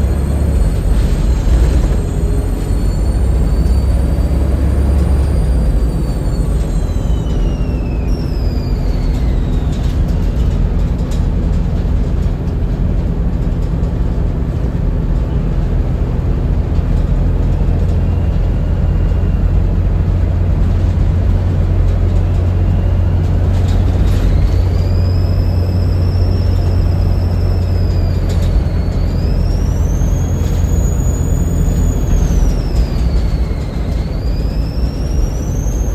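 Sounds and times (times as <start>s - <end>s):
turbo whistle: 0.0s - 10.3s, 22.2s - 35.9s
bus diesel engine drone: 0.0s - 35.9s.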